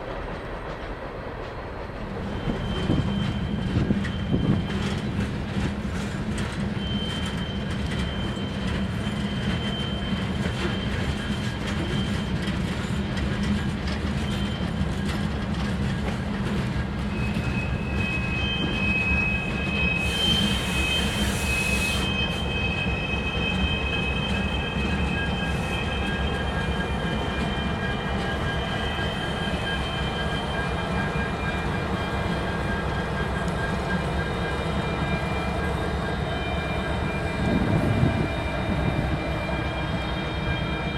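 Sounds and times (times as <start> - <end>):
freight train rumbling past: 0.0 - 40.9
train wheels squealing: 0.0 - 40.9
burst of hiss: 20.0 - 22.1.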